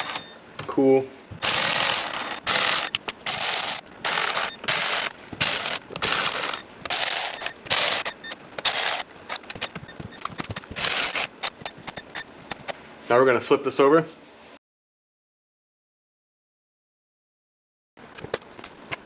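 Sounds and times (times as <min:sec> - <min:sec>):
pneumatic air ratchet: 0:01.4 - 0:09.7, 0:10.4 - 0:12.7.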